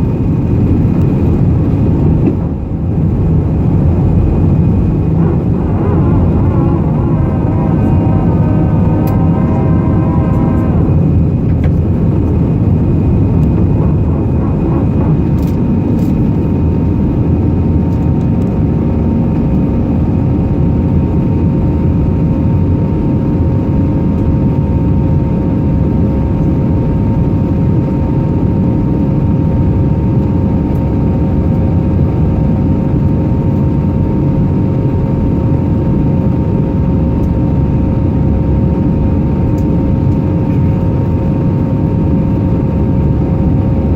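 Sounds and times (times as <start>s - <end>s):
engine whine tones: 0.0s - 43.9s
jet engines rumbling: 0.0s - 43.9s.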